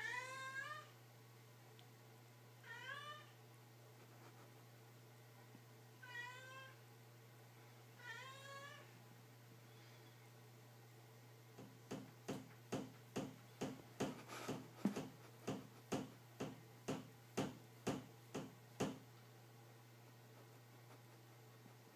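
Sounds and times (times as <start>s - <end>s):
cat knocking on a door: 11.6s - 19.0s.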